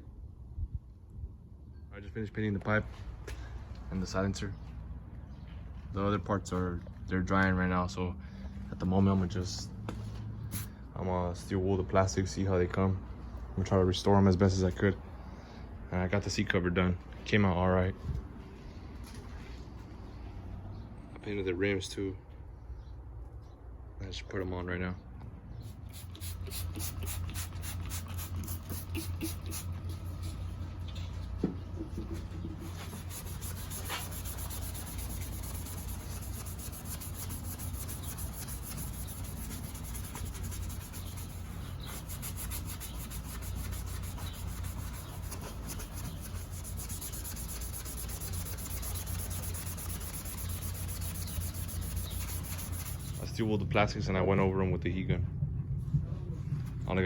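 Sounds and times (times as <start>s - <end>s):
steel wool scrubbing plastic: 32.5s - 53.3s.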